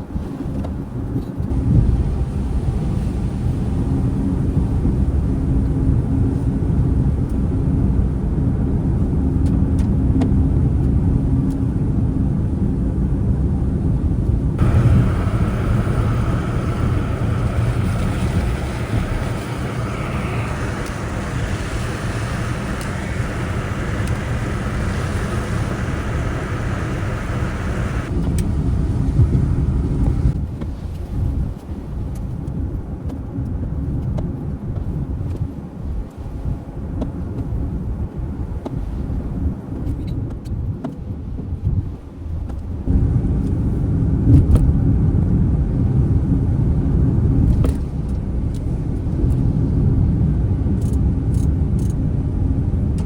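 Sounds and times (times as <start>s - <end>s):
wind and rain hiss: 0.0s - 40.1s, 41.1s - 53.0s
vehicle engine rumbling: 1.2s - 30.5s, 42.9s - 53.0s.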